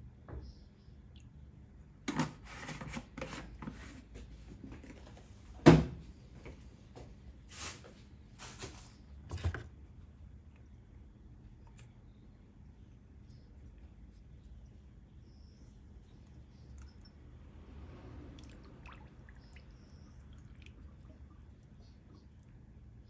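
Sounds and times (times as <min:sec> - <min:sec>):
handling knocks and clunks: 0:08.5 - 0:09.8.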